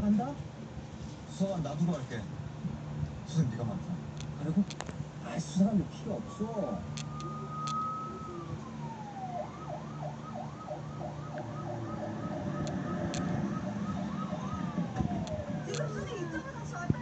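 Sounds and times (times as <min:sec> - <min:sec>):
police siren wailing and yelping: 0:06.0 - 0:16.8.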